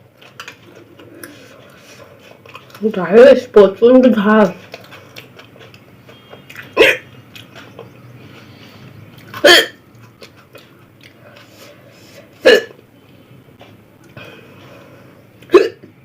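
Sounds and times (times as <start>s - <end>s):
hiccups: 6.5s - 7.1s, 9.3s - 9.8s, 12.4s - 12.8s, 15.5s - 15.9s.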